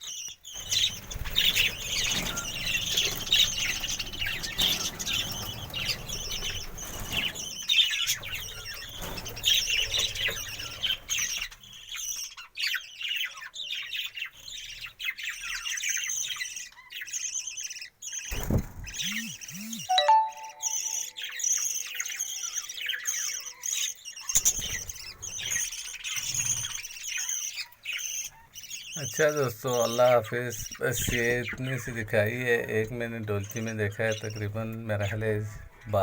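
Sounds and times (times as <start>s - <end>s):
budgerigars chattering and chirping: 0.0s - 20.2s, 21.4s - 36.0s
wings flapping: 0.6s - 11.4s, 18.3s - 19.5s.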